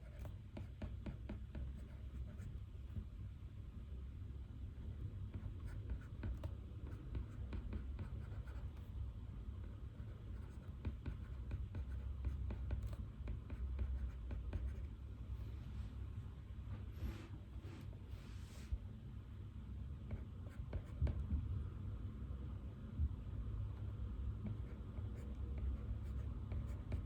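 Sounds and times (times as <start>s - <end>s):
pen writing on paper: 0.0s - 2.5s, 5.4s - 8.8s, 10.0s - 14.9s, 24.4s - 27.0s
low room rumble: 0.0s - 27.0s.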